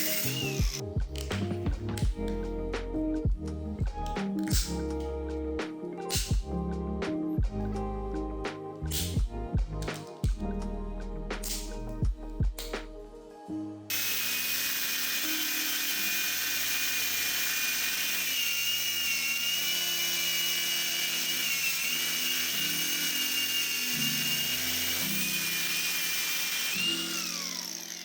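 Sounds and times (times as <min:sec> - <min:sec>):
power tool whining: 0:00.0 - 0:00.8, 0:13.9 - 0:28.0.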